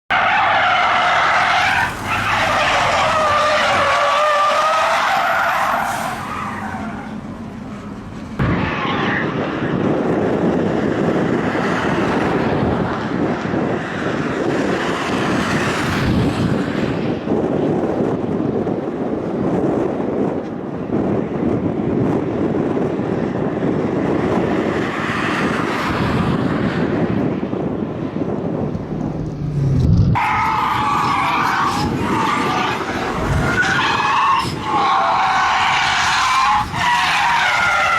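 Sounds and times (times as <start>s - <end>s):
loud engine revving: 28.7s - 30.6s.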